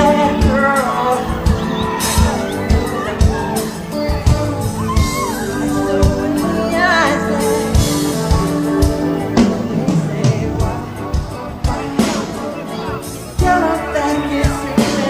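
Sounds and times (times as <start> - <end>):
drum beat: 0.0 - 6.4
held keyboard chords: 0.0 - 15.0
person singing: 0.0 - 15.0.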